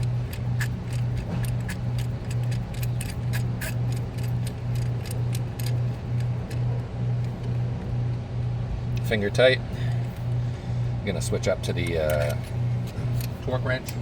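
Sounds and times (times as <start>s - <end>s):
pulsing low hum: 0.0s - 14.0s.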